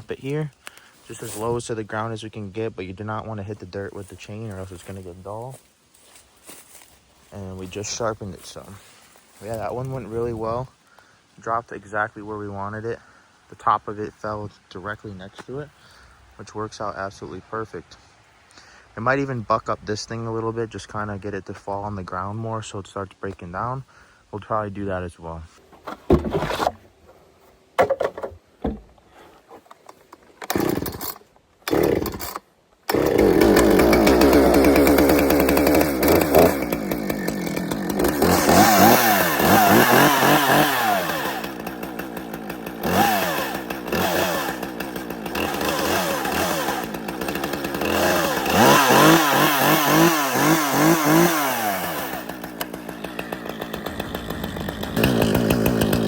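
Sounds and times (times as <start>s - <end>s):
chainsaw cutting stump: 4.0s - 10.6s, 25.6s - 27.2s, 27.8s - 56.0s.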